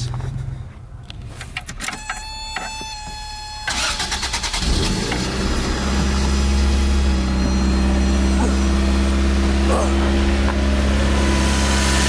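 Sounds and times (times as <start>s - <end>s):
car engine idling: 3.2s - 12.0s
steady high tone: 5.2s - 11.9s.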